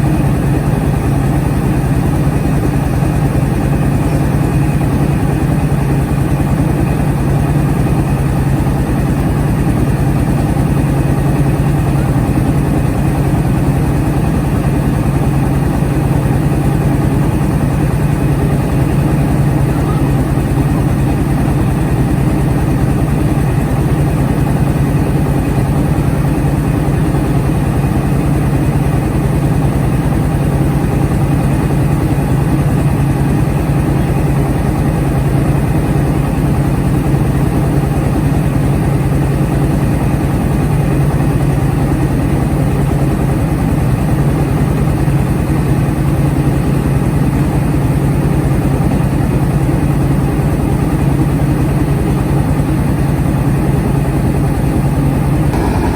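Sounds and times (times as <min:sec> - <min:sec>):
rice mill engine humming: 0:00.0 - 0:25.5, 0:55.4 - 0:55.9.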